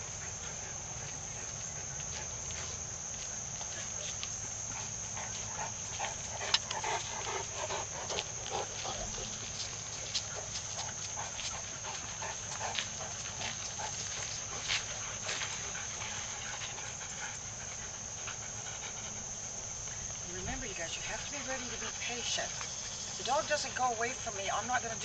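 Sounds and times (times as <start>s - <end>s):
crickets chirring: 0.0s - 25.0s
dog breathing hard: 4.4s - 20.2s.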